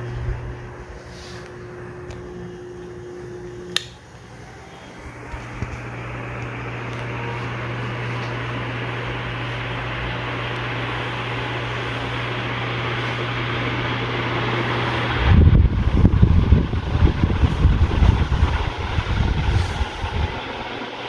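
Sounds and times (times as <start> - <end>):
ceiling fan motor hum: 0.0 - 21.0
rush of moving air: 12.2 - 20.8.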